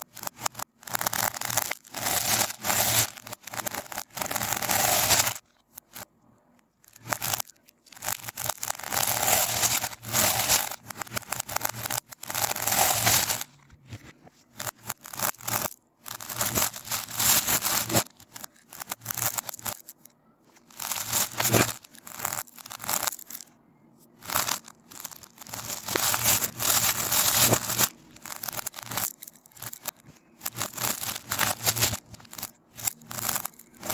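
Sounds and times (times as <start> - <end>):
slime crackling and popping: 14.7 - 20.0, 24.3 - 33.9.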